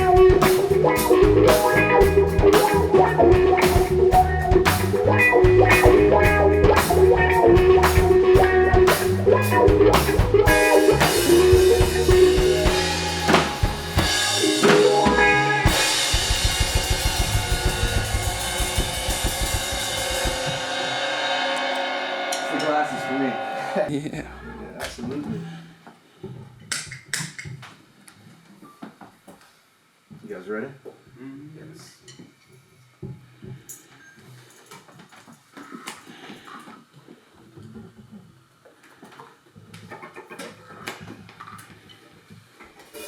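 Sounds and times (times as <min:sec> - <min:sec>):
fast drum roll: 0:00.0 - 0:23.9
drum kit beat: 0:00.0 - 0:24.0
electric guitar: 0:00.0 - 0:25.7
electric bass: 0:00.0 - 0:25.8
cymbals crashing: 0:10.5 - 0:23.9.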